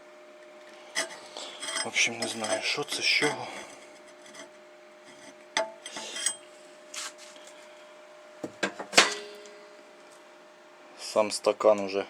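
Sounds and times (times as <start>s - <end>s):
metal scraping: 0.9s - 6.4s.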